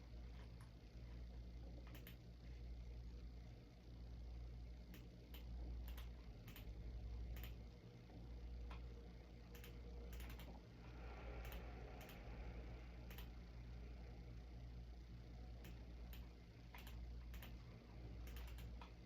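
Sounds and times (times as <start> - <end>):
low steady hum: 0.0 - 19.0
computer key clicks: 1.9 - 2.2, 4.9 - 6.7, 7.3 - 7.6, 9.5 - 10.5, 11.4 - 12.2, 13.0 - 13.4, 15.6 - 17.6, 18.2 - 19.0.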